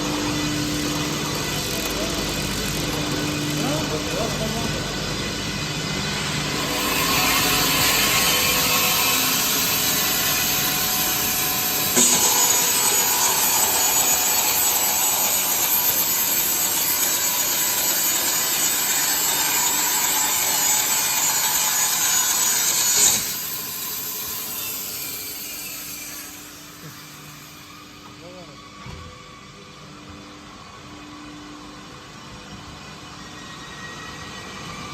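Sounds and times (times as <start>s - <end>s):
machine running: 0.0s - 22.4s
panel saw with high whine: 0.0s - 34.9s.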